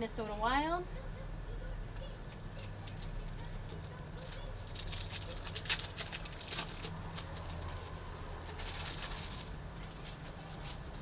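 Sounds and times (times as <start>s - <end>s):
card wrappers crinkling: 2.4s - 11.0s.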